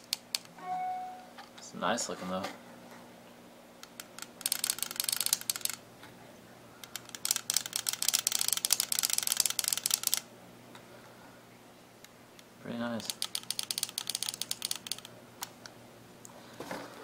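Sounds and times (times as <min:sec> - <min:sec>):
paintball marker rapid clicking: 0:03.8 - 0:05.8, 0:06.8 - 0:10.3, 0:13.0 - 0:15.1.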